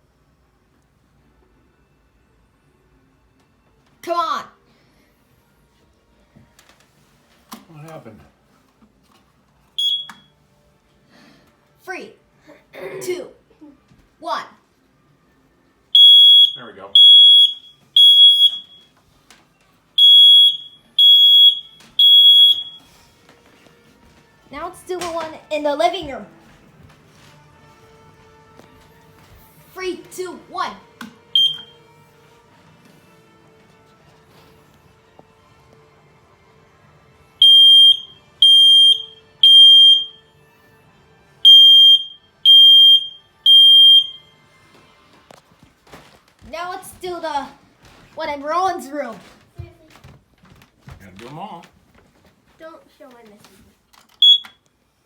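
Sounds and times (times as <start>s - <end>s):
smoke alarm high-pitched beeps: 9.8s - 10.4s, 16.0s - 19.0s, 20.0s - 23.0s, 31.4s - 31.9s, 37.4s - 40.3s, 41.4s - 44.4s, 54.2s - 54.7s.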